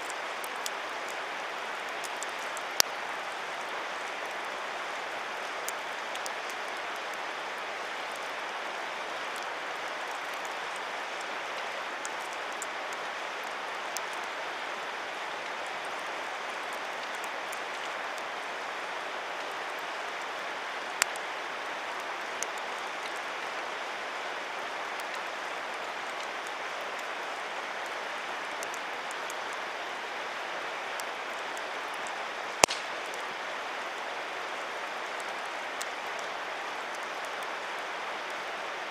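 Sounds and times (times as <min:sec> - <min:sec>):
campfire crackling: 0:00.0 - 0:38.9
fire hissing: 0:32.6 - 0:33.2
fire popping: 0:32.6 - 0:33.3.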